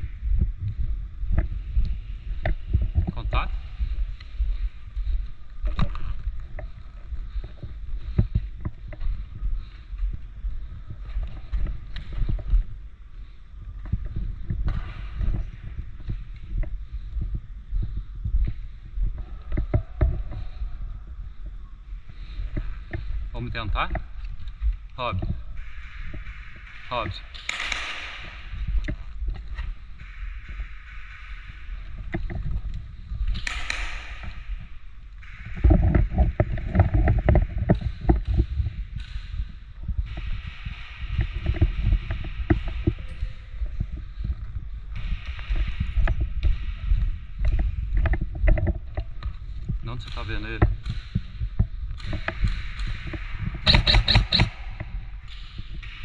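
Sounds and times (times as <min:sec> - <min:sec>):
microphone handling noise: 0:00.0 - 0:56.0
wind rumbling: 0:00.0 - 0:56.0
thumps and knocks: 0:43.8 - 0:49.8.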